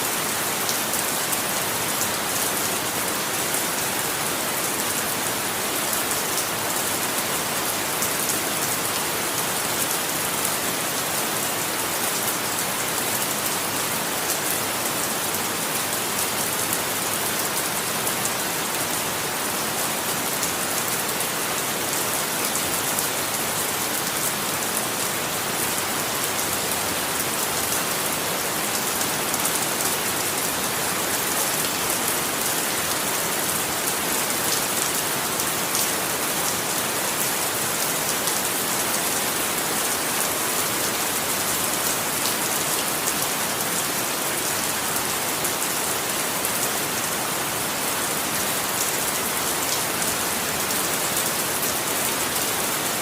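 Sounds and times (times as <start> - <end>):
steady rain falling: 0.0 - 53.0.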